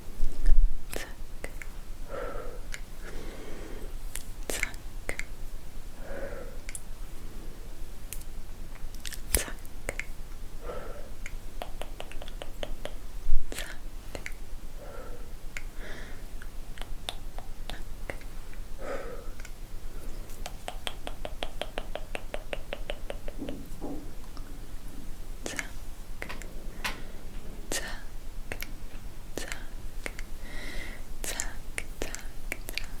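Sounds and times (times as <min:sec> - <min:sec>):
tongue clicks: 0:00.4 - 0:01.8, 0:04.1 - 0:05.4, 0:06.6 - 0:06.9, 0:08.1 - 0:10.2, 0:11.2 - 0:14.4, 0:15.5 - 0:15.8, 0:16.4 - 0:18.6, 0:19.3 - 0:19.6, 0:20.2 - 0:24.5, 0:25.4 - 0:26.5, 0:27.7 - 0:28.8, 0:29.4 - 0:30.3, 0:31.2 - 0:33.0
breathy mouth noises: 0:00.4 - 0:05.4, 0:09.0 - 0:30.4, 0:31.2 - 0:33.0
lip smacks: 0:00.9 - 0:01.8, 0:04.1 - 0:05.3, 0:06.6 - 0:06.9, 0:08.1 - 0:10.2, 0:11.2 - 0:14.4, 0:16.4 - 0:18.6, 0:19.3 - 0:24.5, 0:25.4 - 0:27.0, 0:27.7 - 0:28.8, 0:29.4 - 0:30.3, 0:31.2 - 0:33.0
sharp mouth pop: 0:11.2 - 0:14.4, 0:20.4 - 0:23.8.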